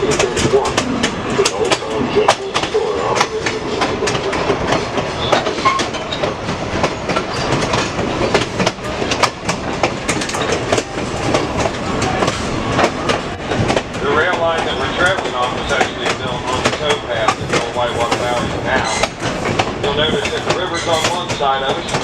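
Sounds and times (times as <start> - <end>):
train wheels rumbling on rails: 0.0 - 22.0
clicking and clatter: 0.1 - 22.0.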